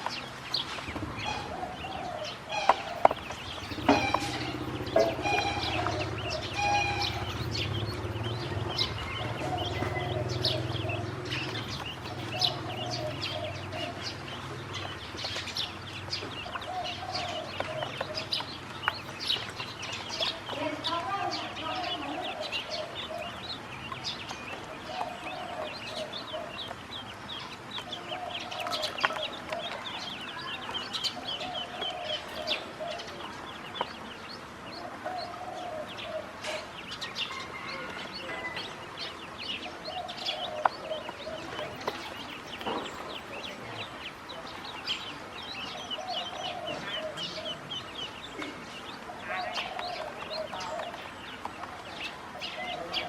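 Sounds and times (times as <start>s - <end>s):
ducklings peeping: 0.0s - 53.0s
lower bird call: 1.1s - 20.5s.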